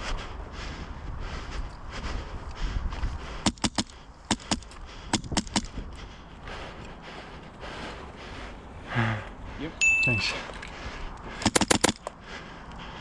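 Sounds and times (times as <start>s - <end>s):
airsoft rifle shots: 3.5s - 5.7s, 11.4s - 12.1s.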